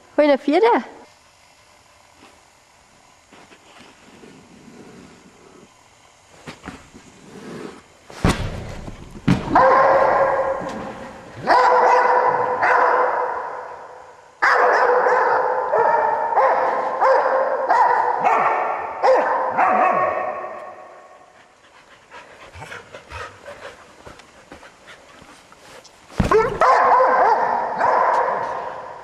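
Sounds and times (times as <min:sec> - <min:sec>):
sharp thump: 0:08.2 - 0:09.6
dog barking rapidly: 0:09.5 - 0:10.7, 0:11.4 - 0:13.4, 0:14.4 - 0:20.6, 0:26.3 - 0:28.6.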